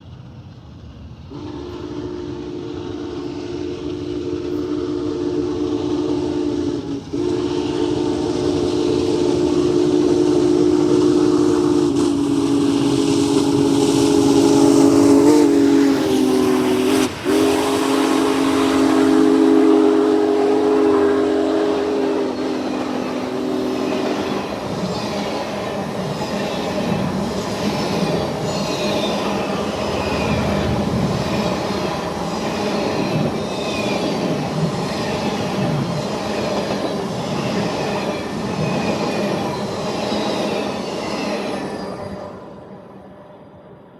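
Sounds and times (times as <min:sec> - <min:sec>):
train wheels clattering: 0:00.0 - 0:42.0
steam whistle chord: 0:01.3 - 0:24.6.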